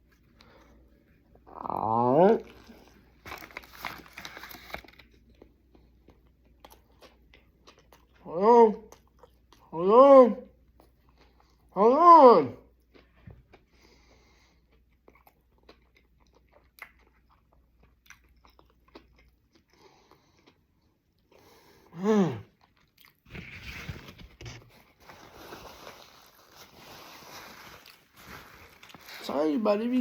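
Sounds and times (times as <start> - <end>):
crunching and chewing: 1.6 - 9.7, 10.6 - 11.7, 12.6 - 21.6, 22.4 - 29.3
person humming mm: 21.9 - 22.5.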